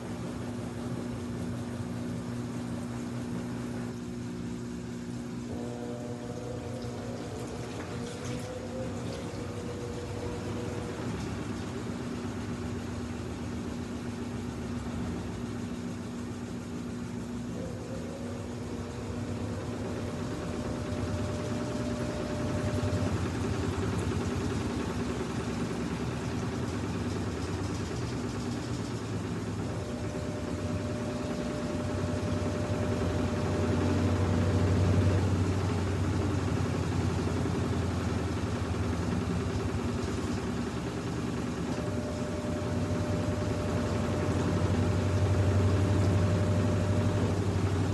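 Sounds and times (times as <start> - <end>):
faint whine: 0.0 - 47.9
washing machine spinning: 0.0 - 47.9.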